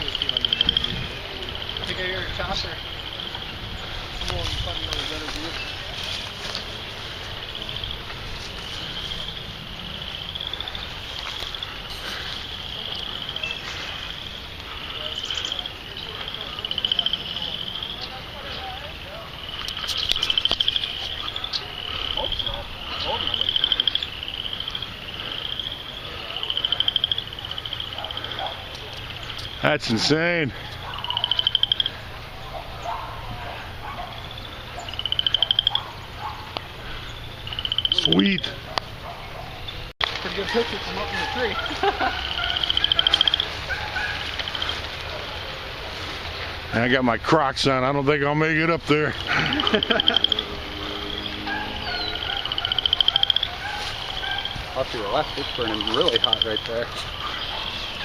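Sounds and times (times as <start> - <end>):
insects trilling: 0.0 - 58.0.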